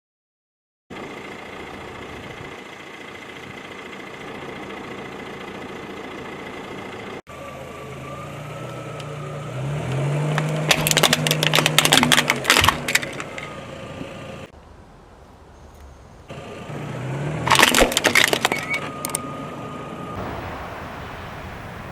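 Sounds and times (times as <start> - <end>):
car engine running: 0.9 - 14.5, 16.3 - 21.9
tyre crushing objects: 10.0 - 13.6, 17.4 - 19.0.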